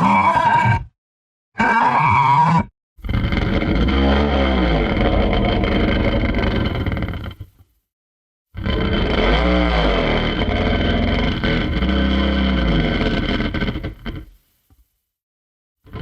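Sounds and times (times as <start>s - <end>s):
low monster howl: 3.3s - 6.5s.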